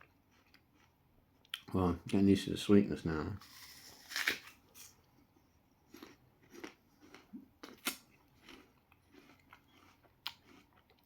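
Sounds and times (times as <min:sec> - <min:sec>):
person chewing apple: 0:00.0 - 0:01.7, 0:03.4 - 0:05.2, 0:05.8 - 0:11.0.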